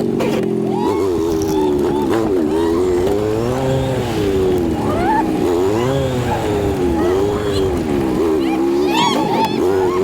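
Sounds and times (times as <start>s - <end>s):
truck engine running: 0.0s - 10.0s.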